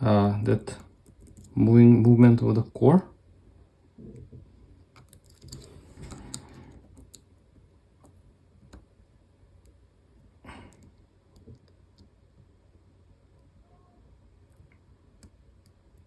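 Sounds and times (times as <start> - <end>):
lock pick clicking and scraping: 5.0 - 6.6.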